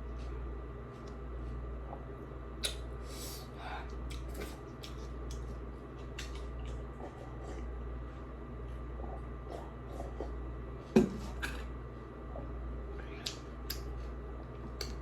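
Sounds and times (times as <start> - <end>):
steady low hum: 0.0 - 15.0
wet chewing: 3.9 - 7.8.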